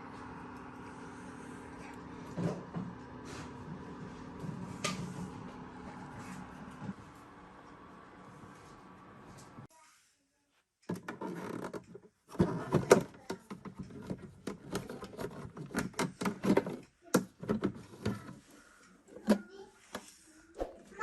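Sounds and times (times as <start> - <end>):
plastic parts clicking and rustling: 10.9 - 18.4.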